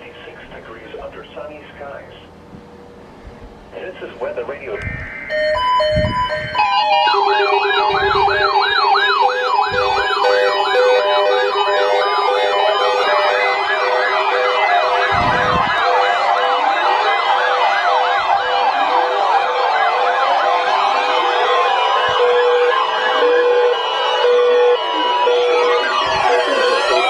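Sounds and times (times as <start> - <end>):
electronic sirens sweeping: 4.7 - 27.0
repeating beep: 4.8 - 8.8
slow rising siren wails: 4.8 - 27.0.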